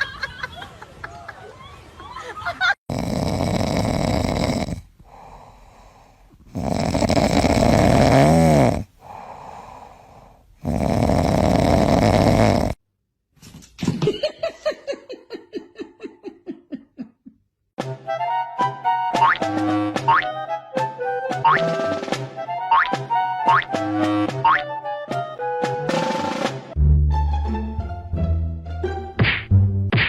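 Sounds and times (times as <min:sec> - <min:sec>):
loud snoring: 0:02.9 - 0:09.9, 0:10.6 - 0:12.8.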